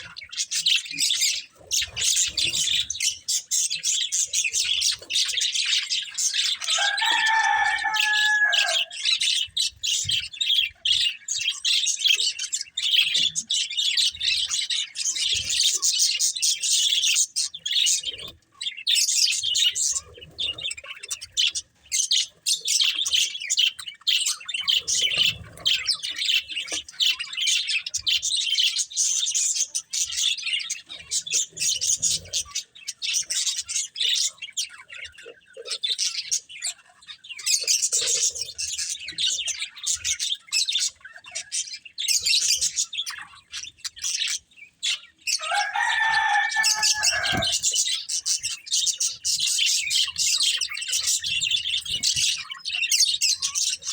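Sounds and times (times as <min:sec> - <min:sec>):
budgerigars chirping and warbling: 0:00.0 - 0:53.9.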